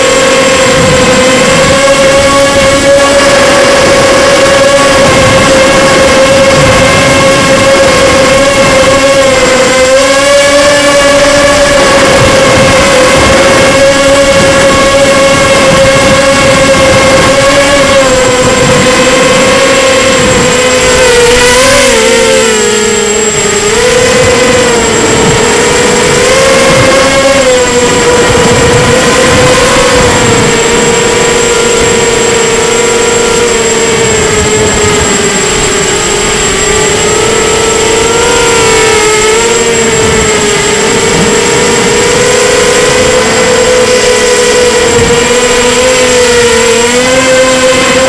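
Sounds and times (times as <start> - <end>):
quadcopter motors whining: 0.0 - 48.0.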